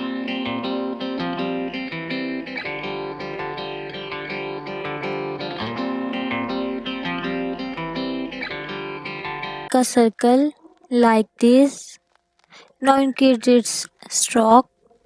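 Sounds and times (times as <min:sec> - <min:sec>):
plucked guitar chords: 0:00.0 - 0:09.7.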